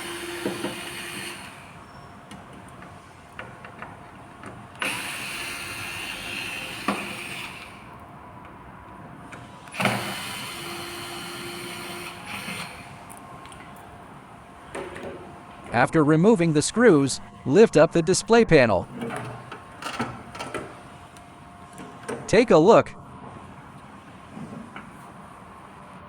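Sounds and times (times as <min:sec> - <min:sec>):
electric screwdriver motor: 0:00.0 - 0:01.6, 0:04.8 - 0:07.9, 0:09.7 - 0:13.0.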